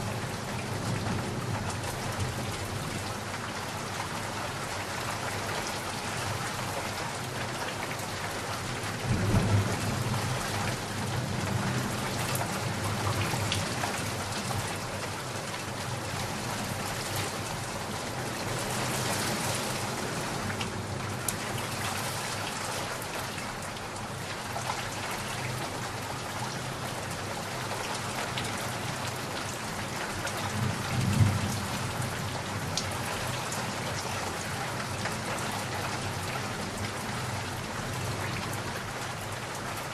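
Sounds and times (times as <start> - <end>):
steady rain falling: 0.0 - 39.9
low rolls of thunder: 9.0 - 12.0, 30.5 - 32.2.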